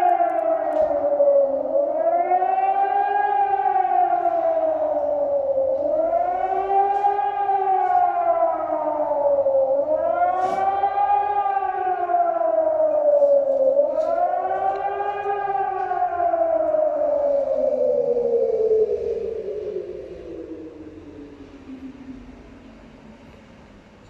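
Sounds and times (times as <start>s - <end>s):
warning siren wailing: 0.0s - 23.9s.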